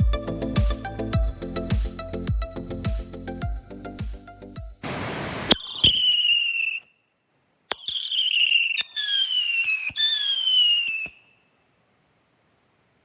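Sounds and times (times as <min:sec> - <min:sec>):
firework cracks: 0:04.8 - 0:06.8, 0:07.7 - 0:11.2
firework whistles falling in pitch: 0:04.8 - 0:07.0, 0:07.7 - 0:11.5.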